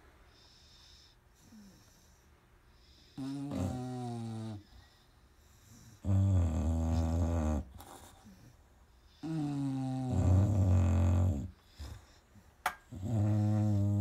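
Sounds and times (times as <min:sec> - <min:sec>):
dog snoring: 0:00.4 - 0:02.2, 0:02.9 - 0:05.0, 0:05.6 - 0:08.5, 0:09.1 - 0:12.2, 0:12.9 - 0:14.0.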